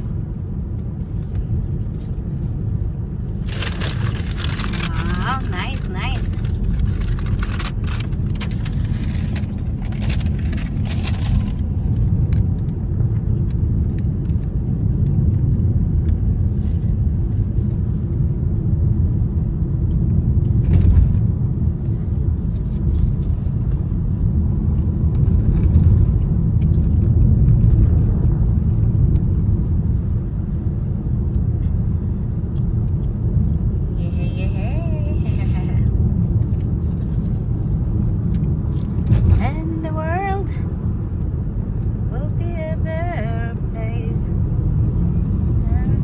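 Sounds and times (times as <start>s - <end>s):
car cabin road rumble: 0.0s - 46.0s
clicks and rattles: 3.4s - 11.6s.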